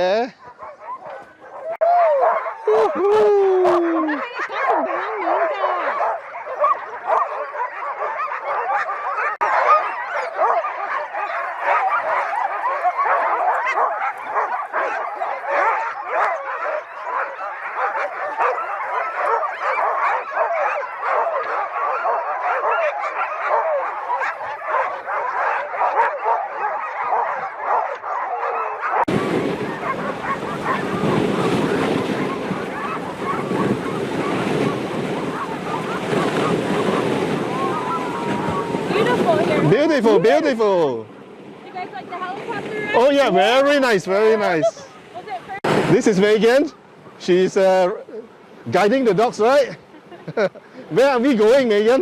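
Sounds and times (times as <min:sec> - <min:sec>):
sled dogs barking and yipping: 0:00.0 - 0:52.0
wind buffeting microphone: 0:29.1 - 0:43.6.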